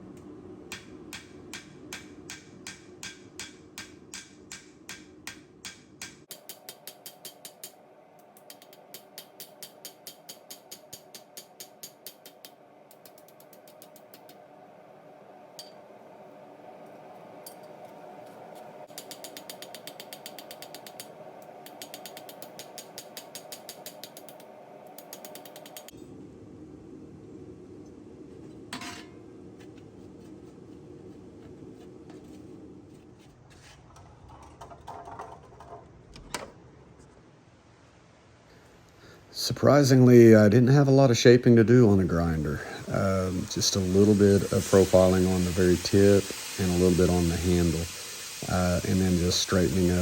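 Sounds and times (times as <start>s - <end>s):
hammer striking hot steel on anvil: 0.7s - 7.8s, 8.4s - 14.3s, 15.6s - 15.8s, 18.9s - 24.4s.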